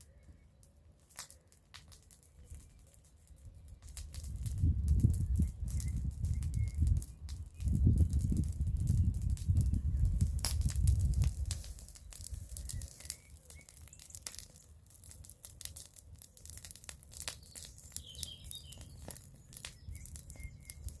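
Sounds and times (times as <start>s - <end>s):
bonfire crackling and popping: 0.0s - 21.0s
birds chirping: 11.8s - 14.5s, 17.2s - 21.0s.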